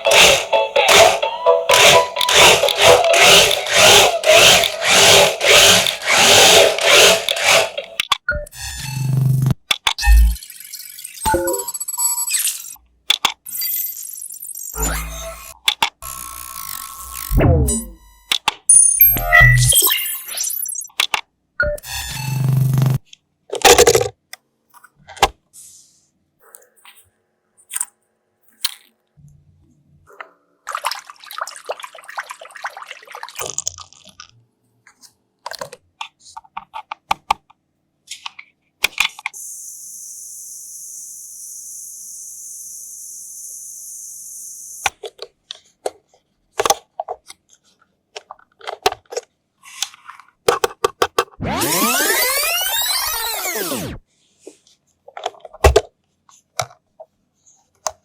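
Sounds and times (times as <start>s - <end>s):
plastic parts clicking and tapping: 0.0s - 8.3s, 13.0s - 13.5s, 15.6s - 16.0s, 18.3s - 18.7s, 20.9s - 21.3s, 23.1s - 24.4s, 34.9s - 39.4s, 44.8s - 51.4s, 56.5s - 56.9s.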